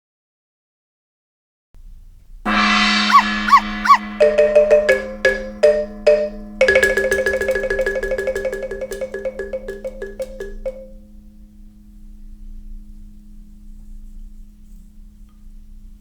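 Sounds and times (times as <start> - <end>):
steady low hum: 1.8 - 14.8
mallet percussion notes: 2.5 - 11.0.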